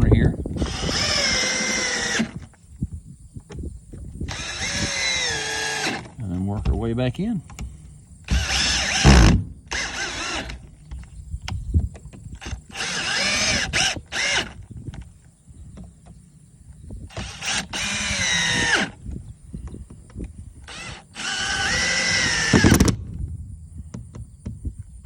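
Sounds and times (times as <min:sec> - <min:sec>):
cordless drill driving screws: 0:00.6 - 0:02.5, 0:04.3 - 0:06.2, 0:08.3 - 0:10.7, 0:12.4 - 0:14.6, 0:17.1 - 0:19.0, 0:20.6 - 0:23.0.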